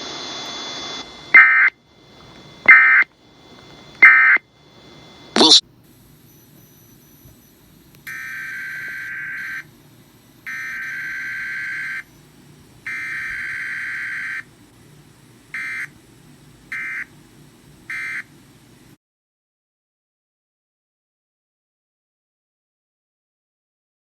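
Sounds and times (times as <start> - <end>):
digital data bursts: 2.6 - 5.6.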